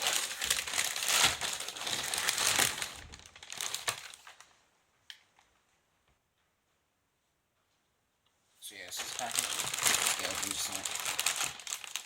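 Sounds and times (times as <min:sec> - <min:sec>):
wrapping crinkling and rustling: 0:00.0 - 0:04.6, 0:08.7 - 0:12.0.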